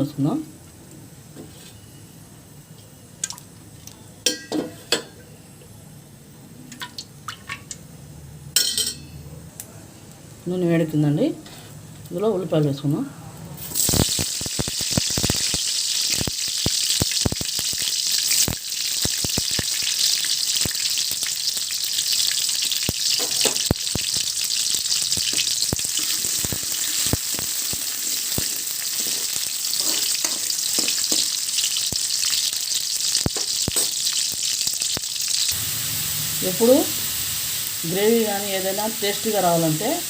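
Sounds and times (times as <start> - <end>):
onions sizzling in hot oil: 13.6 - 40.0.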